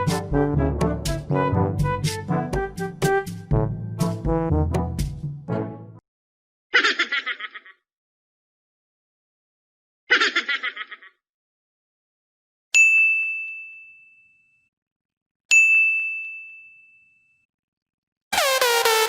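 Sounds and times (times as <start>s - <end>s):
person giggling: 6.8s - 7.8s, 10.1s - 11.2s
bell-like ding: 12.8s - 14.6s, 15.5s - 17.4s
electronic dance music: 18.4s - 19.0s.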